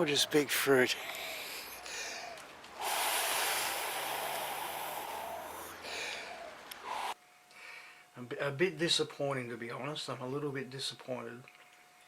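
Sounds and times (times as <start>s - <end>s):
person breathing noisily: 0.9s - 8.1s.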